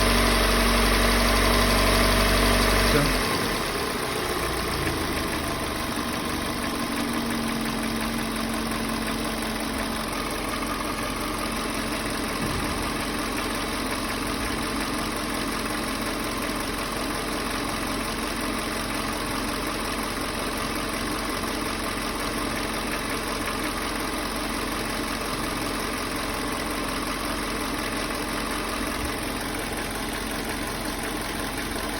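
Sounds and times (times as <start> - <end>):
car engine revving then idling: 0.0 - 18.6
engine knock: 0.0 - 31.9.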